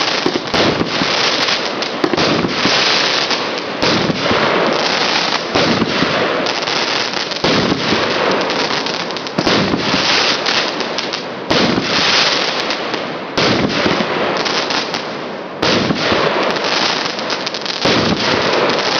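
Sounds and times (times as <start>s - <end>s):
firework shells bursting: 0.0s - 12.8s
dense firework crackling: 0.0s - 18.9s.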